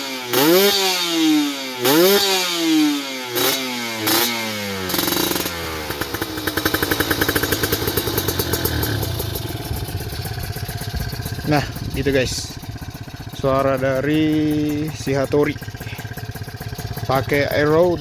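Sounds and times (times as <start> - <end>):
motorcycle engine revving: 0.0 - 18.0
motorcycle engine idling unevenly: 3.9 - 18.0.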